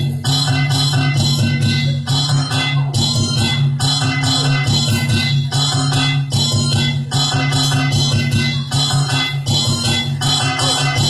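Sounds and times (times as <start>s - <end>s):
low bass line: 0.0s - 11.0s.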